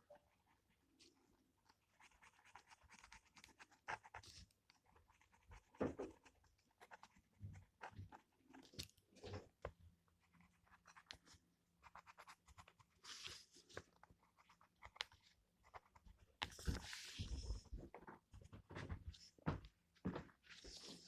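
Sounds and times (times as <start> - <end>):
pens scratching on paper: 1.0 - 17.7.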